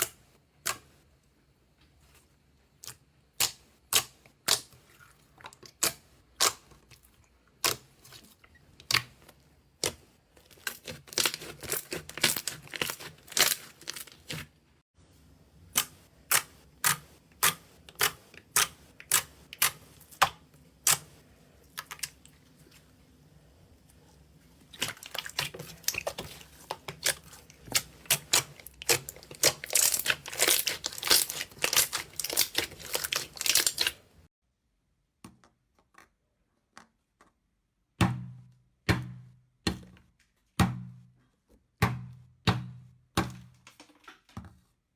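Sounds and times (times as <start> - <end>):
slime crackling: 24.7 - 34.0.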